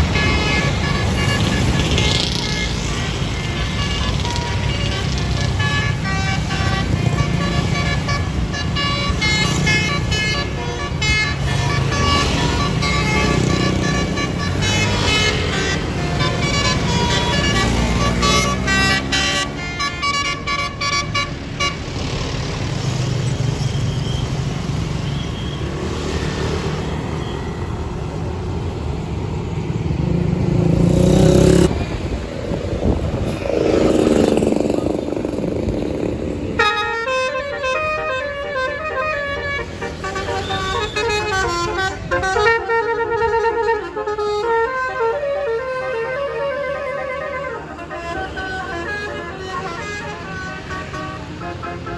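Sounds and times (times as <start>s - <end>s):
musical air horns playing tunes: 0.0s - 22.0s, 36.5s - 51.9s
bus engine noise: 0.0s - 51.9s.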